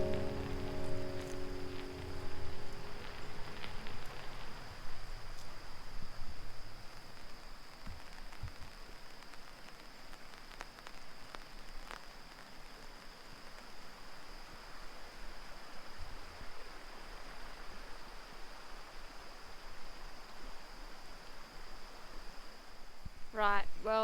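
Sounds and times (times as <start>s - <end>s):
steady high-pitched tone: 0.0s - 4.6s
light rain hissing: 0.0s - 24.0s
raindrop ticks: 6.8s - 13.7s.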